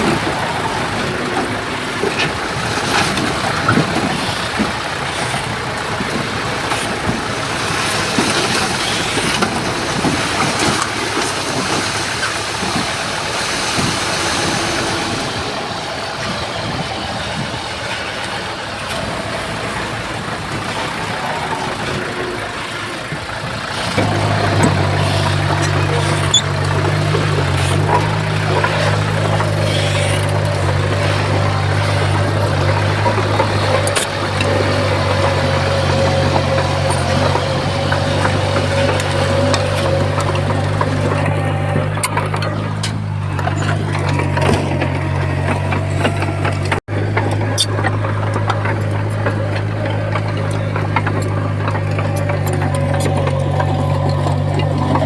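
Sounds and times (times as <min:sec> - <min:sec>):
heavy machinery engines rumbling: 0:00.0 - 0:55.0
low engine drone close by: 0:00.0 - 0:55.0
clanks and knocks: 0:22.8 - 0:55.0.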